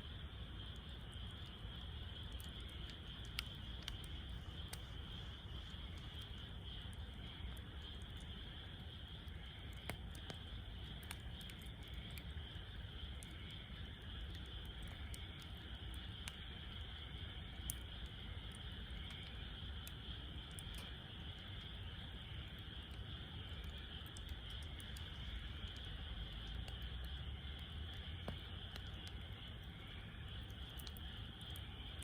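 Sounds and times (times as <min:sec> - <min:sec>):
crickets chirring: 0:00.0 - 0:32.0
wood fire crackling: 0:00.0 - 0:32.0.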